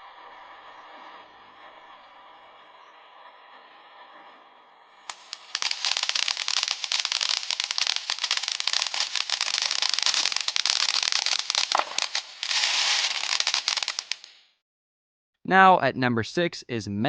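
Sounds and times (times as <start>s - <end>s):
firework crackling: 4.9s - 14.4s
firework hiss: 4.9s - 14.4s.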